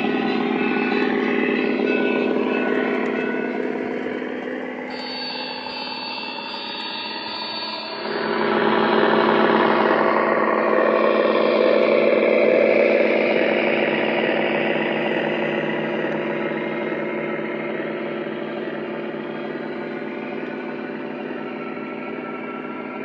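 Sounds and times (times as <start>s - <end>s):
model train motor whir: 0.0s - 23.0s.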